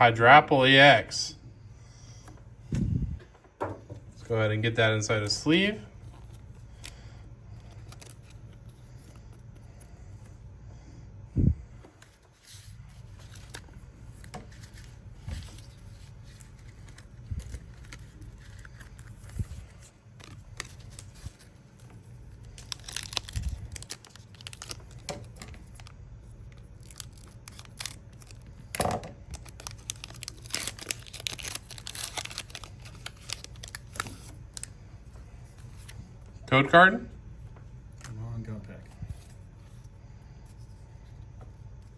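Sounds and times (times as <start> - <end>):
foil wrapper tearing and crinkling: 13.0 - 34.7.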